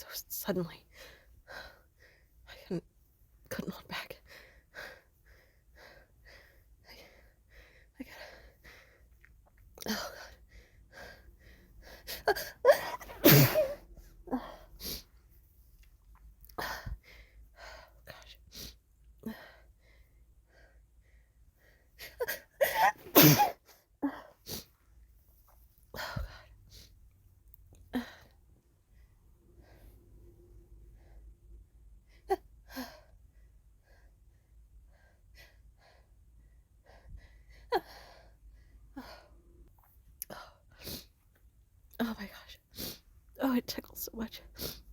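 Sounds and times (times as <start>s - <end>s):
soft breaths: 0.0s - 22.7s, 23.8s - 44.9s
woman sneezing: 12.7s - 13.8s, 22.6s - 23.6s.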